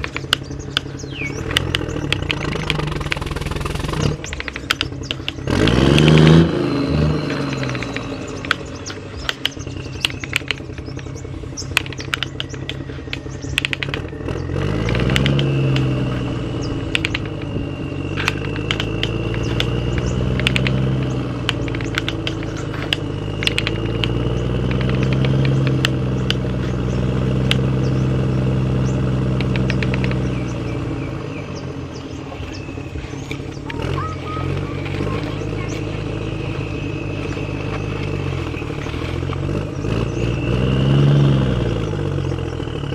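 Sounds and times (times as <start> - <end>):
toy vehicle engine drone: 0.0 - 42.9
short clicks and clatter: 18.2 - 26.8.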